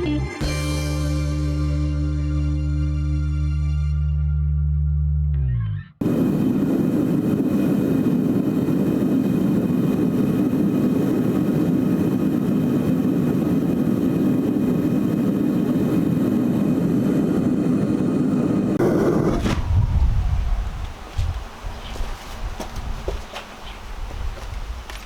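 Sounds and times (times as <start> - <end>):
background music: 0.0 - 4.2
steady mechanical roar: 6.0 - 21.6.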